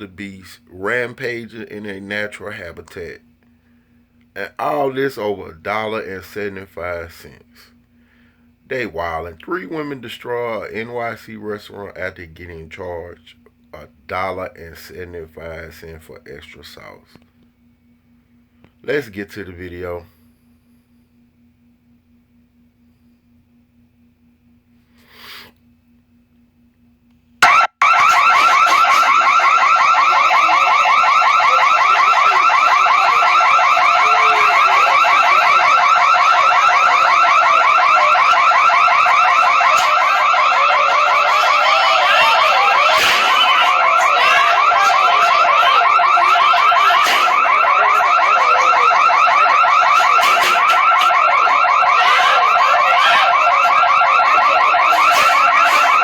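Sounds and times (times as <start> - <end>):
electronic alarm warbling: 27.4 - 56.0.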